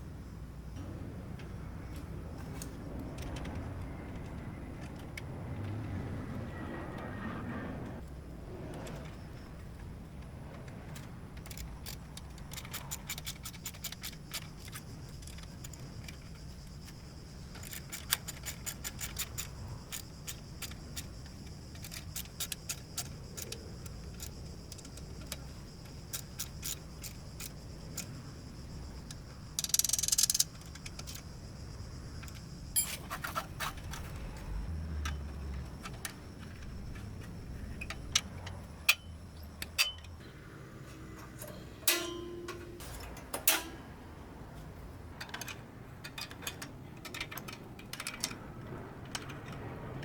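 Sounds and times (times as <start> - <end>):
steady low hum: 0.0 - 50.0
ratchet wrench clicking: 29.0 - 31.3.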